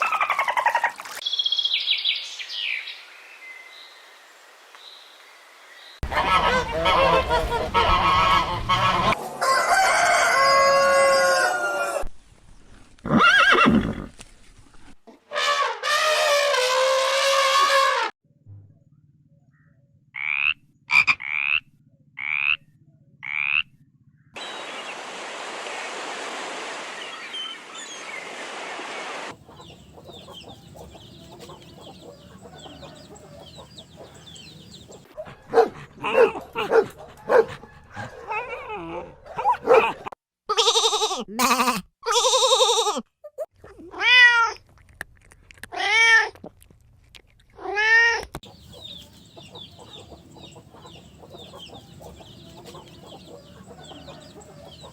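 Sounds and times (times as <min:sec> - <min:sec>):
assorted animal calls: 0:06.0 - 0:09.2, 0:29.4 - 0:39.8, 0:48.5 - 0:54.9.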